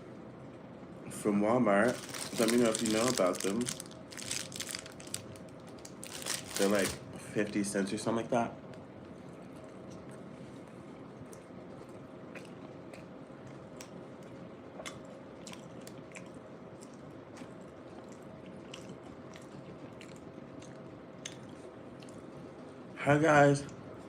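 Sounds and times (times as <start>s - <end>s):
chewing soft food: 8.7s - 22.6s.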